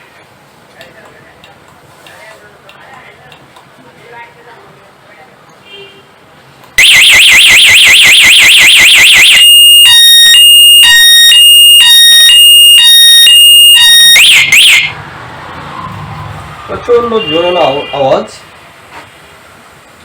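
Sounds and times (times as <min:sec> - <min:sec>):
motorcycle alarm siren: 0:06.8 - 0:15.0.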